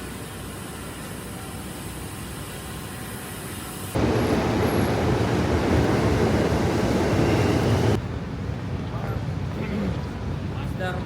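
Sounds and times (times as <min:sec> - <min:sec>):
train rumbling: 0:03.9 - 0:09.4.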